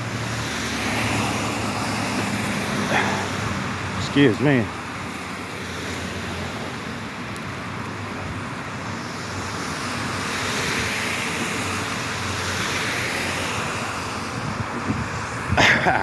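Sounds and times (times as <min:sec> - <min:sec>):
vehicle passing: 0:00.0 - 0:06.9
tyres hissing on wet road: 0:00.0 - 0:16.0.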